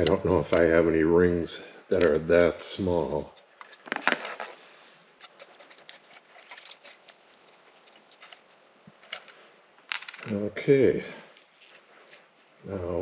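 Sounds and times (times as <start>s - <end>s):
small clicks and ticks: 5.2s - 10.3s.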